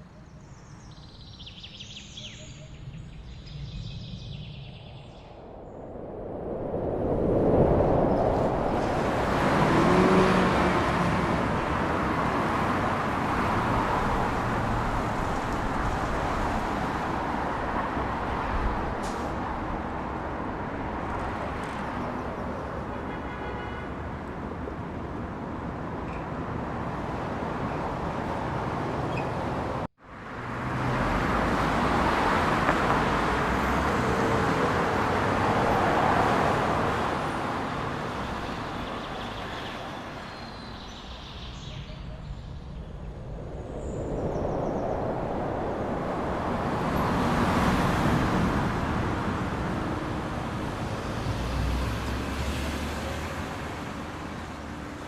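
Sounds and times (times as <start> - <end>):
rushing wind: 0.7 - 23.1, 24.0 - 55.0.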